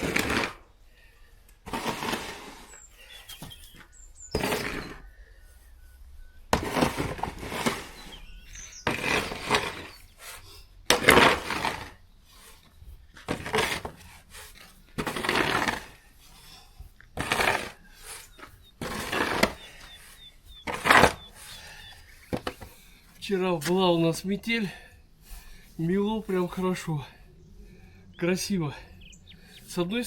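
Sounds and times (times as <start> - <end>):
crunching and scraping in snow: 1.6 - 22.4.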